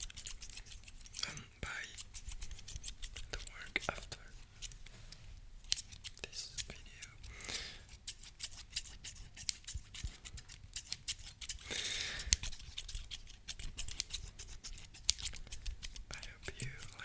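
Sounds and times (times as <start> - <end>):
metal scissors snipping: 0.0 - 4.8, 5.6 - 7.3, 7.9 - 17.0
soft hiss: 0.6 - 8.2, 15.0 - 17.0.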